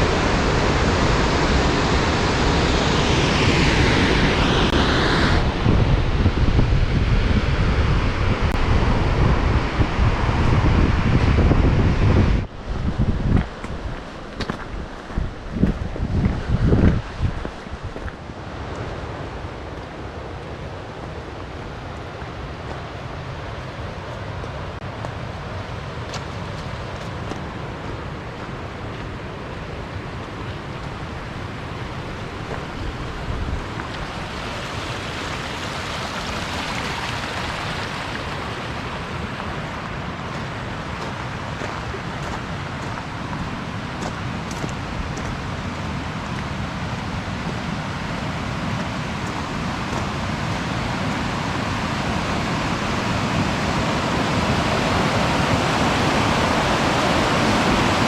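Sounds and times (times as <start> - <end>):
rushing creek water: 13.2 - 58.0.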